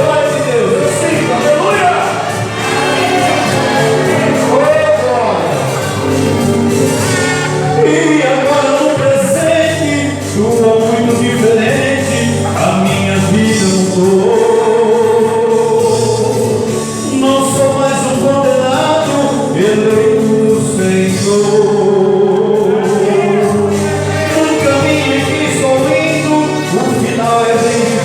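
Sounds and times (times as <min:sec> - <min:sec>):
instrumental accompaniment: 0:00.0 - 0:28.0
group singing gospel song: 0:00.4 - 0:09.7, 0:20.8 - 0:28.0.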